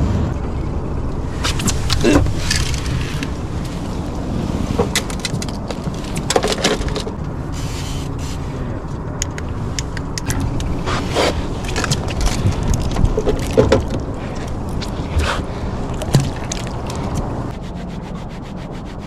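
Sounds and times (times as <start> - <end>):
boat engine rumbling: 0.1 - 9.9.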